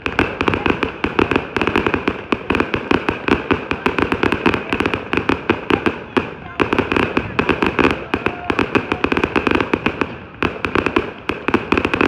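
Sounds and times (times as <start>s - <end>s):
fireworks crackling and popping: 0.0s - 12.0s.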